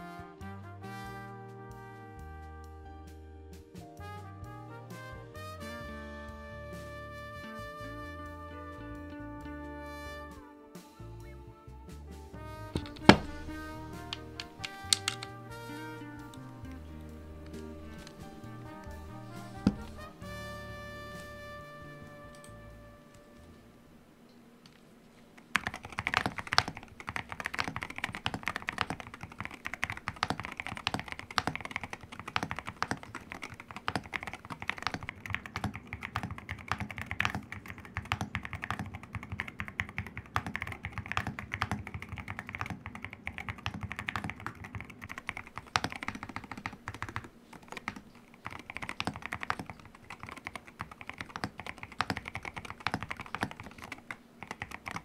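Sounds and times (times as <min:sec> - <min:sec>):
fast typing on mechanical keyboard: 0:12.8 - 0:15.4, 0:25.4 - 0:55.0.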